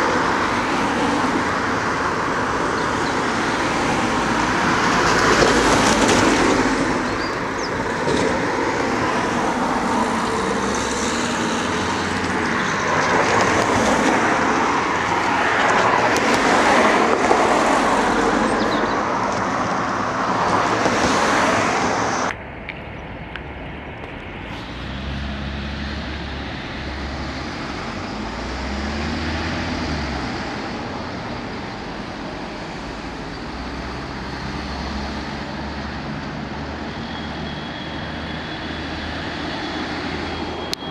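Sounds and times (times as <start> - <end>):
passing cars: 0.0 - 40.9
low vehicle engine hums: 21.6 - 31.1.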